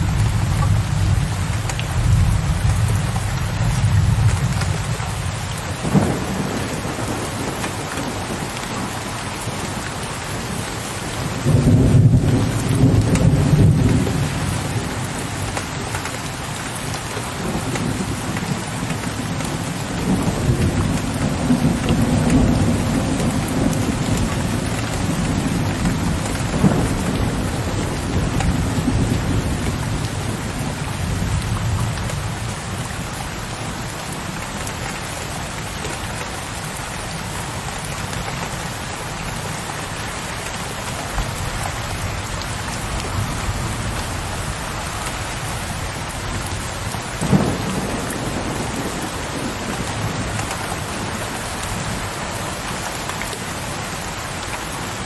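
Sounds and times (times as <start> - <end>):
heavy rain: 0.0 - 55.0
distant thunder rumbling: 5.8 - 9.1, 17.4 - 31.4, 46.9 - 52.0.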